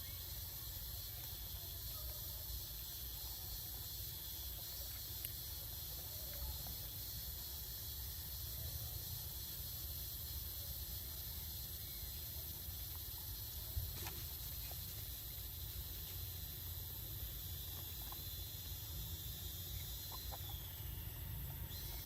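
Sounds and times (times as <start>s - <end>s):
high-pitched insect drone: 0.0s - 22.0s.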